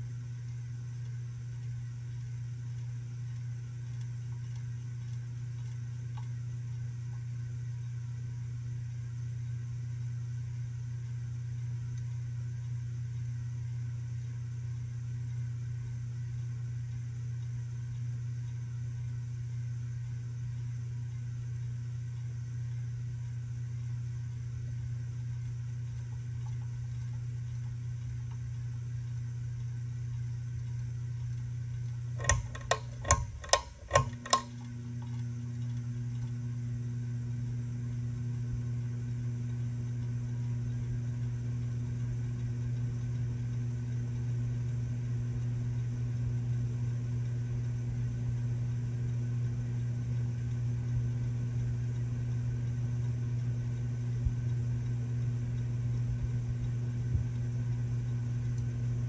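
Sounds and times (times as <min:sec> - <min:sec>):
ceiling fan motor humming: 0:00.0 - 0:59.0
sharp clicks: 0:30.7 - 0:36.4.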